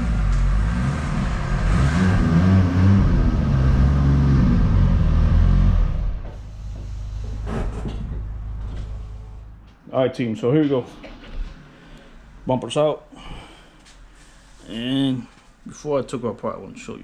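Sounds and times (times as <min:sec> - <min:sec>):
vehicle engine running: 0:00.0 - 0:09.8.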